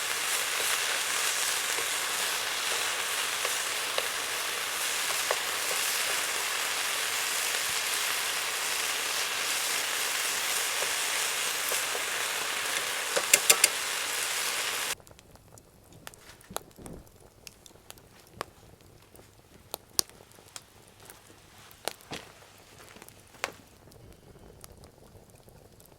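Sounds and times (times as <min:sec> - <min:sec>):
food sizzling in a pan: 0:00.0 - 0:15.0
sharp clicks: 0:11.6 - 0:15.0.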